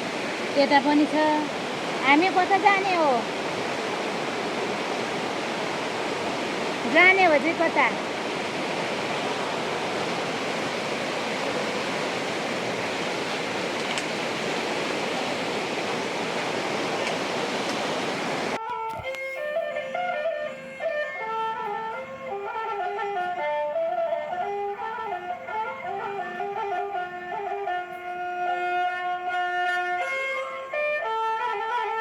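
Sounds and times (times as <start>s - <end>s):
water flowing in a stream: 0.0s - 23.0s
instrumental music with melody: 18.6s - 32.0s.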